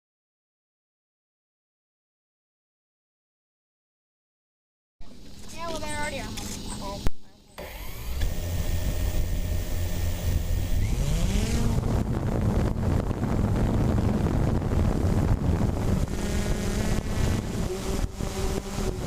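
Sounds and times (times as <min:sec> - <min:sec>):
vehicle engine running: 0:07.6 - 0:19.0.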